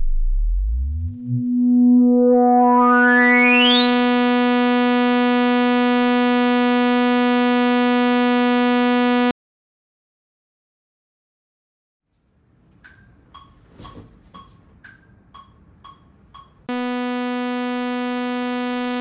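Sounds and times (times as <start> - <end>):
synthesizer filter sweep: 0.0 - 9.3, 16.7 - 19.0.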